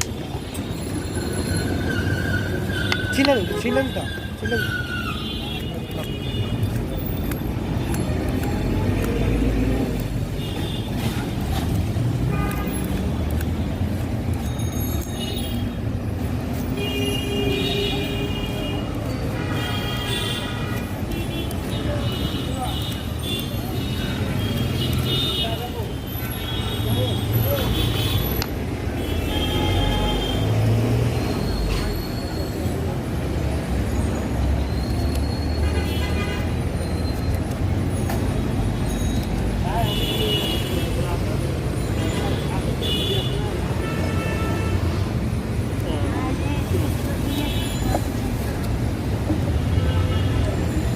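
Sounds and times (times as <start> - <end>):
rumble of passing vehicles: 0.0 - 50.9
street traffic: 0.0 - 50.9.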